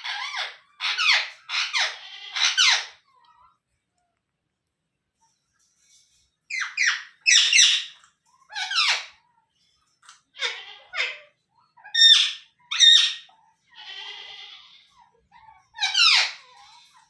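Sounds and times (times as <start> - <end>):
parakeet squawking: 0.0 - 3.0, 6.5 - 9.1, 10.4 - 16.7.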